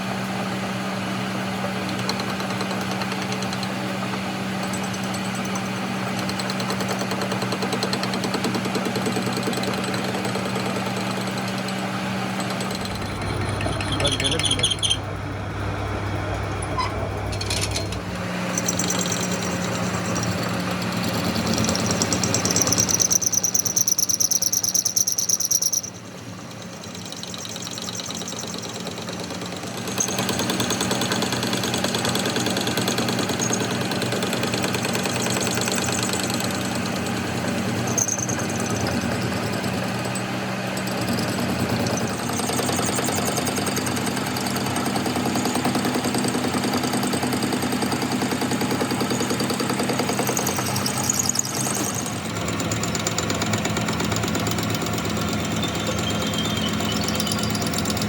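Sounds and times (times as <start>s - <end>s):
machine humming: 12.5s - 23.3s, 49.9s - 58.0s.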